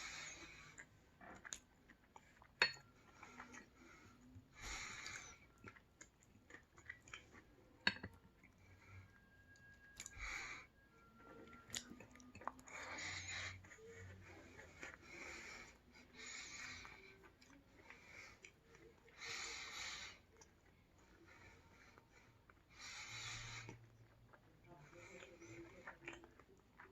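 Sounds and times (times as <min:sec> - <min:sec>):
person chewing: 0:00.0 - 0:26.9
breaths through nose: 0:21.2 - 0:23.8.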